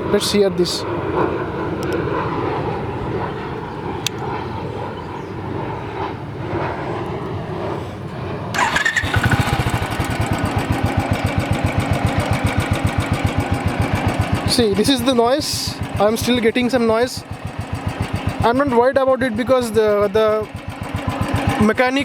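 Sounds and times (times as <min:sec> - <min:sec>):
motorcycle engine idling: 0:08.6 - 0:22.0.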